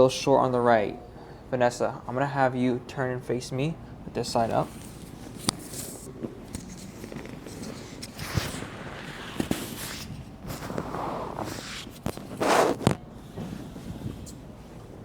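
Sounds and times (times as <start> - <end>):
rustling on padded table: 4.4 - 15.0.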